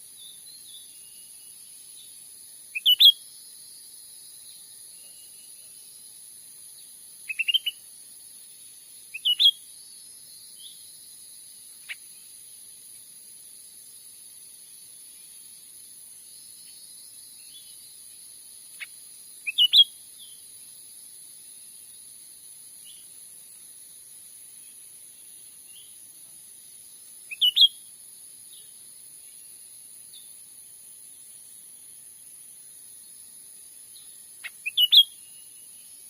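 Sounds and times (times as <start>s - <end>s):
insect hiss: 0.0s - 36.0s
bird sharp rising chirps: 34.4s - 35.6s.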